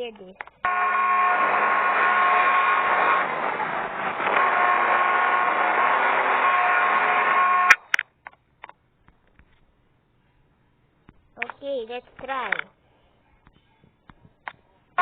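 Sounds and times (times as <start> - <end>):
ceiling fan whirring: 0.0 - 15.0
sharp clicks: 7.7 - 9.6, 12.2 - 12.7.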